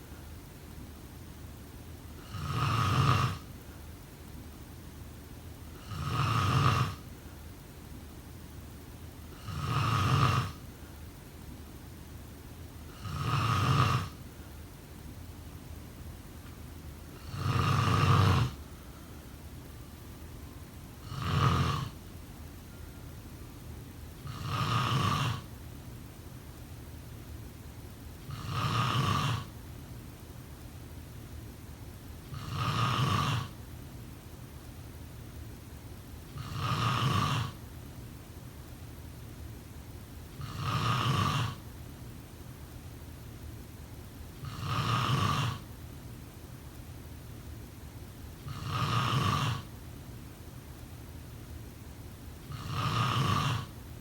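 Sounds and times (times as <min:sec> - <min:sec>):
steady low background noise: 0:00.0 - 0:54.0
snoring: 0:02.2 - 0:03.6, 0:05.7 - 0:07.1, 0:09.3 - 0:10.7, 0:12.9 - 0:14.2, 0:17.2 - 0:18.7, 0:21.0 - 0:22.0, 0:24.2 - 0:25.5, 0:28.3 - 0:29.6, 0:32.3 - 0:33.6, 0:36.3 - 0:37.6, 0:40.4 - 0:41.7, 0:44.4 - 0:45.7, 0:48.4 - 0:49.7, 0:52.5 - 0:53.8.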